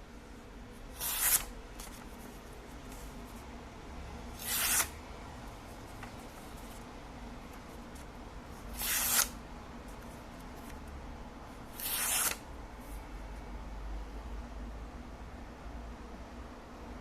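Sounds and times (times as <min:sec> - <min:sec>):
knife slicing paper: 0:00.9 - 0:02.0, 0:04.3 - 0:04.9, 0:08.7 - 0:09.4, 0:11.8 - 0:12.4.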